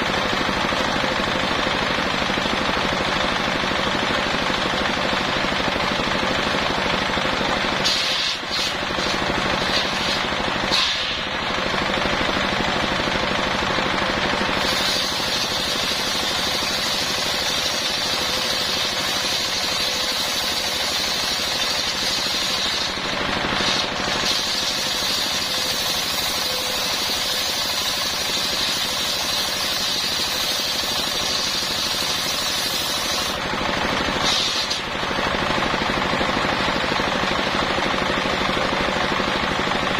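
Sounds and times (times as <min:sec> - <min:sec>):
circular saw cutting wood: 0:07.8 - 0:11.6, 0:14.4 - 0:35.2.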